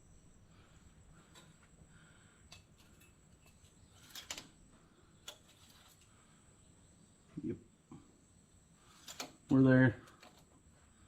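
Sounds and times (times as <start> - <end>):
faint handling clicks and knocks: 8.9 - 10.6.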